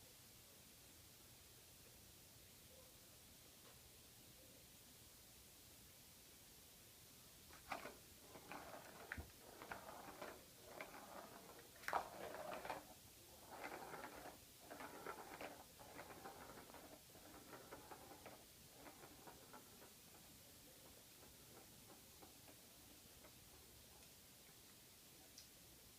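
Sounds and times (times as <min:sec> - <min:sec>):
plastic ball rattling in track: 0:07.5 - 0:23.7.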